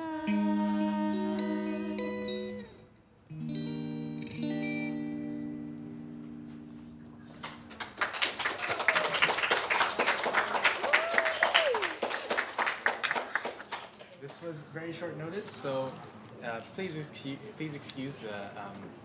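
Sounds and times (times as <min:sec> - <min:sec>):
guitar chords ringing: 0:00.0 - 0:07.4
audience clapping: 0:07.3 - 0:14.4.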